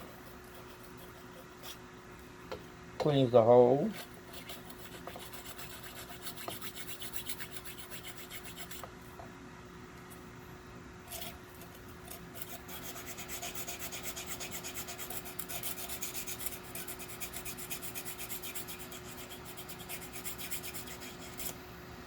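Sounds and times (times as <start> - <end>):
small file rasping in a hole: 3.9 - 8.9, 12.1 - 21.6.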